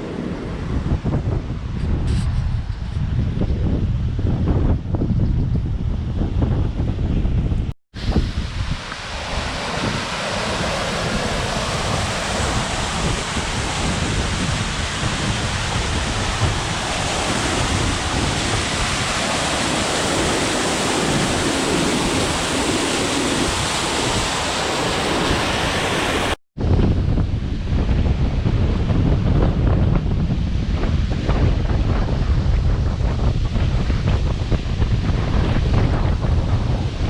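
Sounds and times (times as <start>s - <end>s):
wind buffeting microphone: 0.0s - 37.0s
waterfall rushing: 8.0s - 26.4s.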